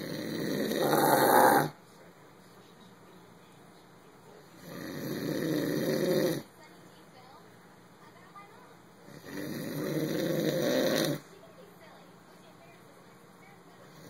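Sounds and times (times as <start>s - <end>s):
person snoring: 0.0s - 1.7s, 4.6s - 6.4s, 9.1s - 11.2s.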